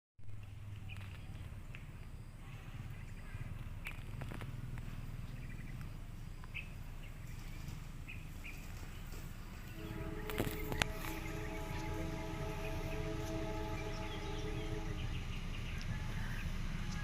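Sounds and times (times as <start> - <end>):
bird chirps: 5.2 - 17.0
low rumble: 9.6 - 17.0
multi-tone locomotive horn: 9.6 - 17.0.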